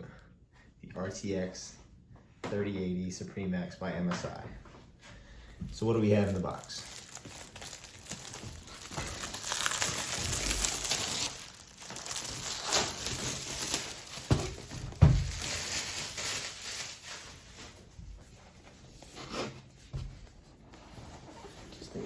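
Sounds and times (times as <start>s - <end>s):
packaging rustling and crinkling: 5.8s - 19.6s.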